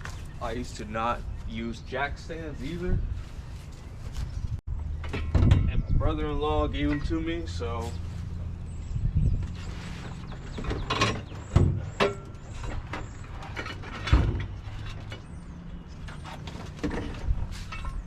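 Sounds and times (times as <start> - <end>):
metal clanks: 10.0 - 15.4.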